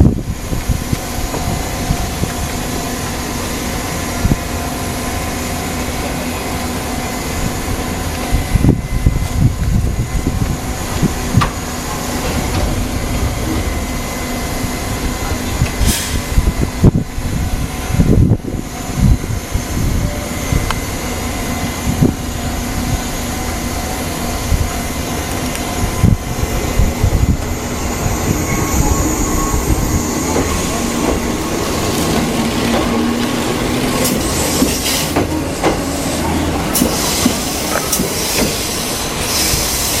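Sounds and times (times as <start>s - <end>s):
train running on rails: 0.0s - 40.0s
clacks over rail joints: 30.3s - 38.7s.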